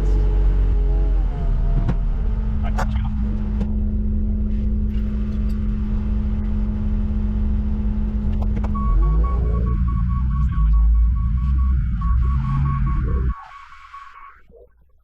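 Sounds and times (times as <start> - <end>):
loader engine whining under load: 0.0 - 13.4
high tone: 8.7 - 14.6.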